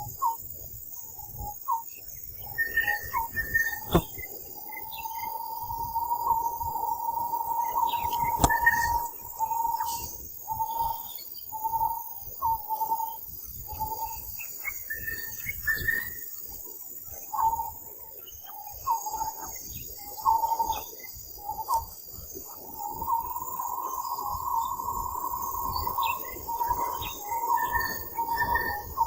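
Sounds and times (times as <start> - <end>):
insects calling in pulses: 0.0 - 29.0
bird chirps: 1.7 - 5.3, 7.6 - 11.8.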